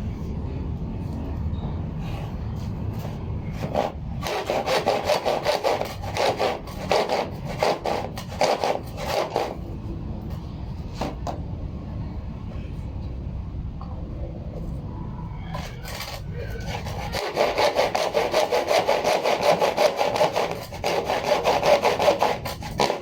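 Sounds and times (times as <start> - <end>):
hand saw sawing: 3.5 - 9.6, 15.6 - 23.0.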